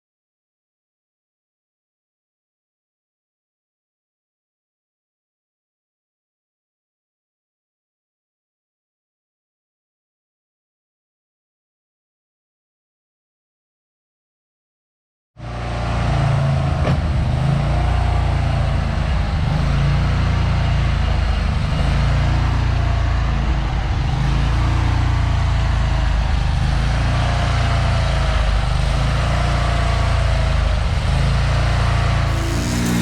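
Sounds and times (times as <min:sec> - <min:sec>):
large engine running: 0:15.4 - 0:33.0
faint wavering whine: 0:32.3 - 0:33.0.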